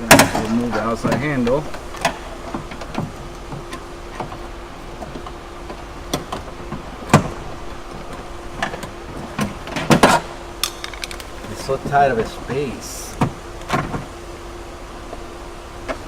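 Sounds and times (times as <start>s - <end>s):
tools clicking and knocking: 9.7s - 11.3s.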